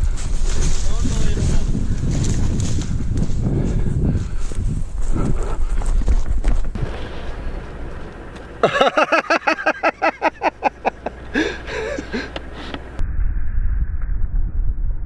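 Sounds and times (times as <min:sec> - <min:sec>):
low rumble: 0:06.8 - 0:15.0
pheasant cackling: 0:06.9 - 0:13.0.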